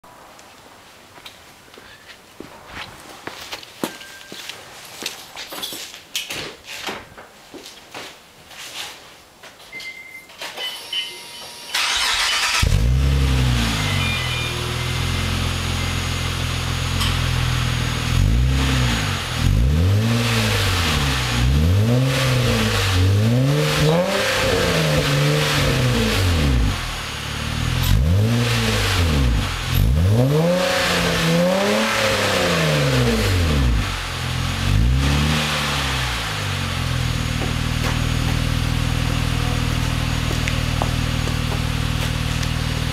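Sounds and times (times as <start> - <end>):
car engine idling and revving: 11.8 - 42.9.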